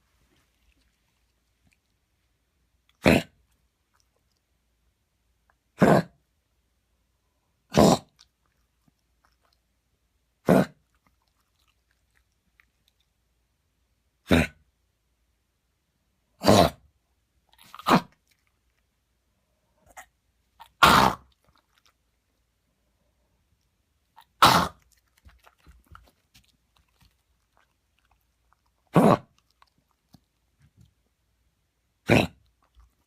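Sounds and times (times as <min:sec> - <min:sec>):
dog coughing: 0:07.7 - 0:08.1, 0:14.2 - 0:14.6, 0:19.9 - 0:21.3, 0:24.3 - 0:24.8, 0:28.9 - 0:29.3, 0:32.0 - 0:32.4.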